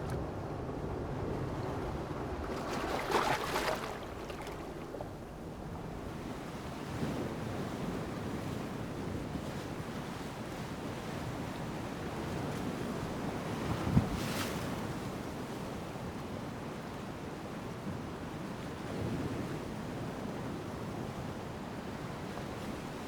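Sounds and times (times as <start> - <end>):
ocean roar: 0.0 - 6.4
sea waves lapping against rocks: 0.0 - 6.4
water splash: 2.4 - 5.4.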